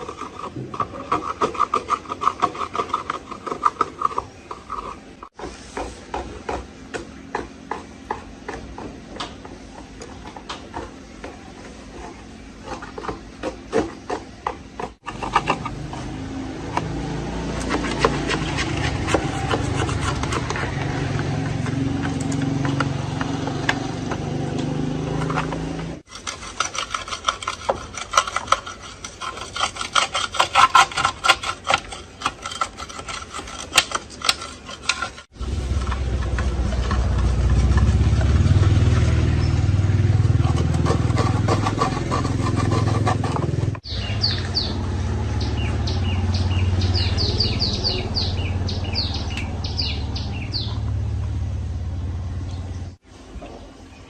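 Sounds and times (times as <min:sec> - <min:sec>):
hand tools filing and scraping: 0:00.0 - 0:44.7
low rumble: 0:35.4 - 0:41.2.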